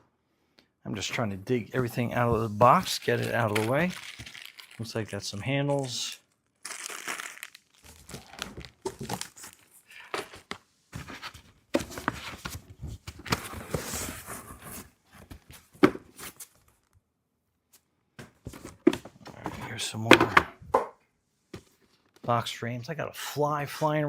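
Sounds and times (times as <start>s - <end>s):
packing material rustling: 2.4s - 10.5s.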